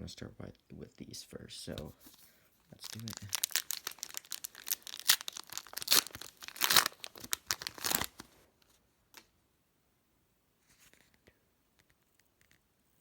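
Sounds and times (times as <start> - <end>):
wrapper tearing and crinkling: 2.8 - 8.4.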